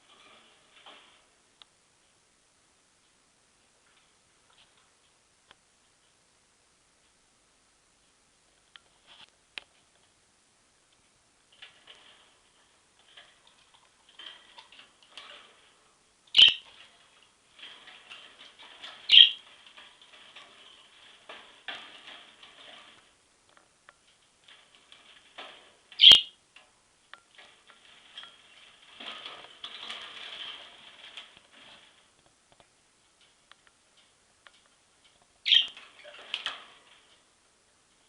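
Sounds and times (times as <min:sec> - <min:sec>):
small clicks and scratches: 0:03.8 - 0:06.2, 0:10.9 - 0:37.3
budgerigar chattering: 0:16.4 - 0:16.6, 0:26.0 - 0:26.3, 0:35.5 - 0:35.7.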